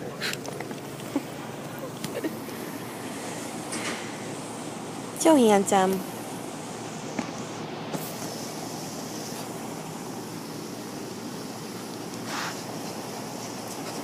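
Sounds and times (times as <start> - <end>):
short breathy puff: 12.3 - 12.7.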